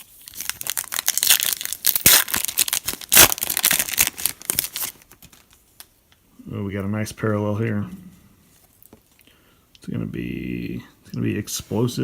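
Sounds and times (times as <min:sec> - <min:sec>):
wrapper tearing and crinkling: 0:00.0 - 0:05.9.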